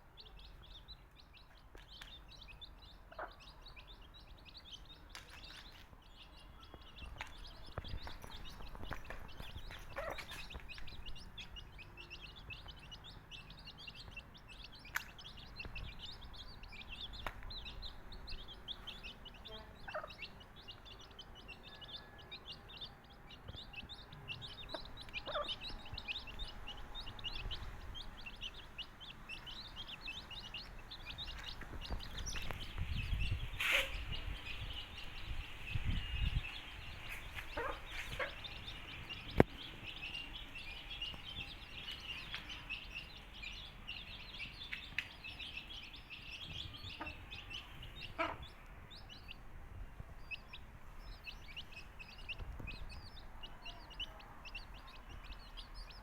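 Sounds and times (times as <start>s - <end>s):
baby chicks peeping: 0.0s - 56.0s
hen clucking: 9.6s - 10.7s, 19.3s - 21.0s, 24.4s - 28.6s, 37.3s - 39.4s, 46.9s - 49.3s.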